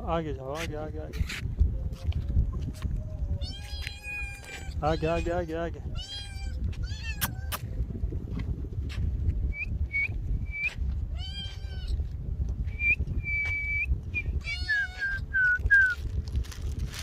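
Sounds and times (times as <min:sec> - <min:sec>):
low rumble: 0:00.0 - 0:04.9, 0:05.8 - 0:17.0
cat meowing: 0:03.4 - 0:05.3, 0:05.9 - 0:07.6, 0:11.1 - 0:12.0, 0:14.4 - 0:15.2
high chirping whistles: 0:12.7 - 0:16.0.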